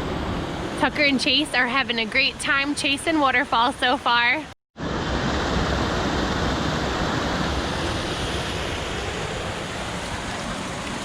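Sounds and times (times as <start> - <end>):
waterfall roaring: 4.8 - 11.0.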